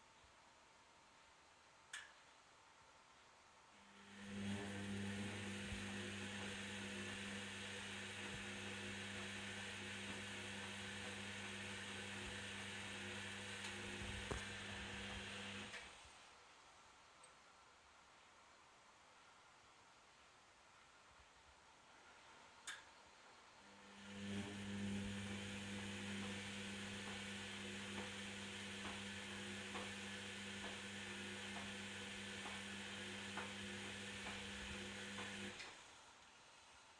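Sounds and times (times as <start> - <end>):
faint ticks: 1.9 - 2.2, 22.6 - 22.9
washing machine running: 4.0 - 15.9, 23.7 - 35.7.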